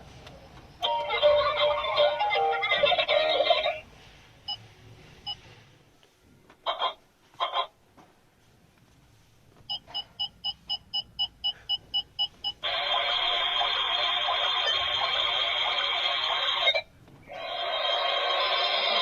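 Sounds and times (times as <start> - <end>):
electronic toy tune: 0.8 - 3.8.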